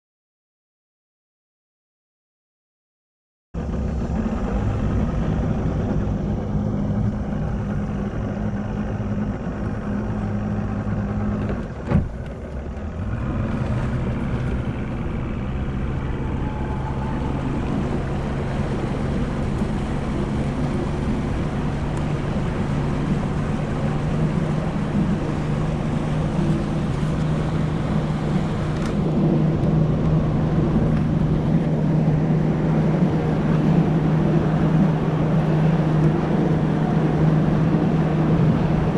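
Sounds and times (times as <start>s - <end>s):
outboard motor running: 3.6s - 38.9s
water rush: 3.6s - 38.9s.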